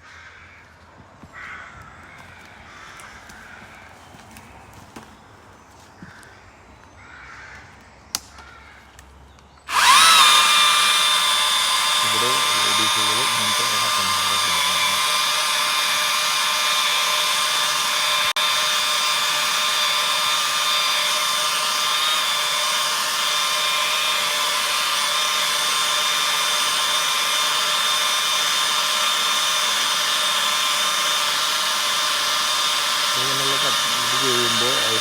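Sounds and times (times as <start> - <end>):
electric chainsaw whining: 9.7 - 35.0.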